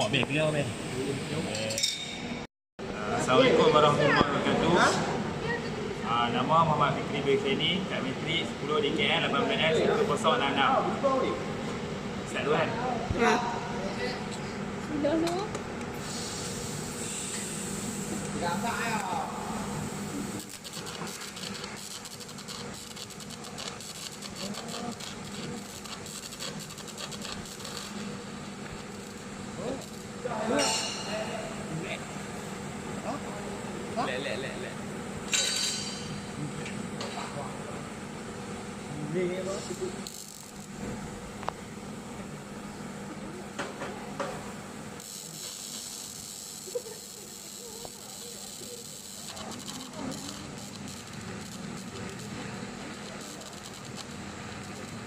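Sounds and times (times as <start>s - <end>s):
welding arc crackling hiss: 0.0s - 1.7s, 14.9s - 55.0s
low machine hum: 0.0s - 55.0s.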